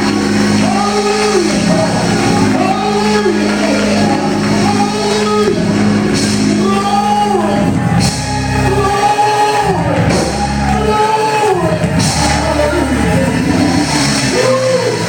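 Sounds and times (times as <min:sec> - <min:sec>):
band playing with bass: 0:00.0 - 0:15.0
voices singing: 0:00.0 - 0:15.0.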